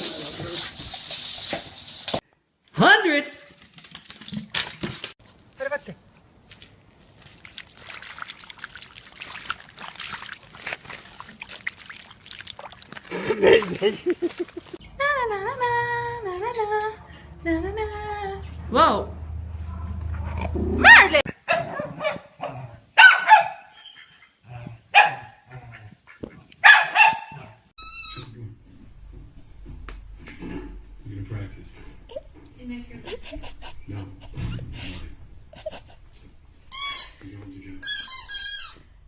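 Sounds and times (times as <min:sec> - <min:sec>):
water splashing and dribbling: 0:05.2 - 0:14.8
dog barking: 0:20.8 - 0:23.9, 0:24.9 - 0:25.8, 0:26.6 - 0:27.6
dog yipping: 0:23.0 - 0:24.2, 0:26.6 - 0:28.3.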